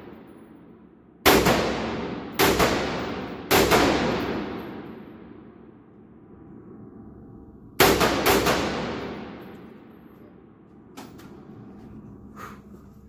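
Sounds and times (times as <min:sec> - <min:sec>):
rifle shot: 0:01.2 - 0:04.9, 0:07.8 - 0:09.5.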